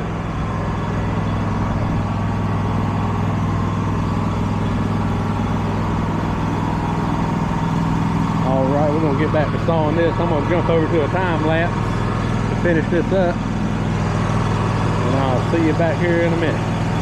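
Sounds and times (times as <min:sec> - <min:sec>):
sawmill engine running: 0:00.0 - 0:17.0.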